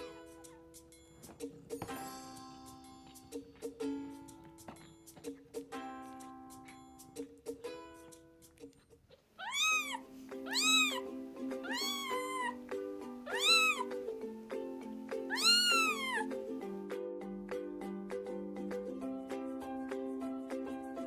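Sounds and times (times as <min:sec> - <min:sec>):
kitten meowing: 0:09.4 - 0:12.6, 0:13.3 - 0:14.0, 0:15.3 - 0:16.3.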